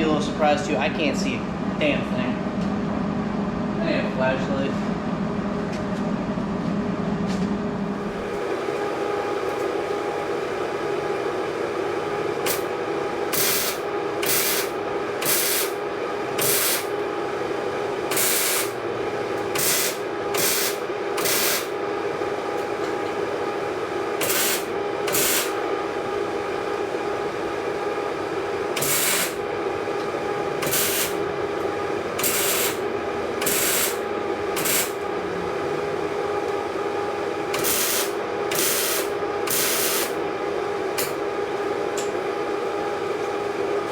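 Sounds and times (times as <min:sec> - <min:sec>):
welder buzzing: 0:08.0 - 0:35.1, 0:36.2 - 0:40.2
welding arc crackling: 0:13.3 - 0:15.8, 0:16.4 - 0:17.0, 0:18.1 - 0:18.8, 0:19.5 - 0:21.8, 0:24.2 - 0:25.6, 0:28.8 - 0:29.5, 0:30.6 - 0:31.2, 0:32.2 - 0:32.8, 0:33.4 - 0:35.0, 0:37.6 - 0:40.2.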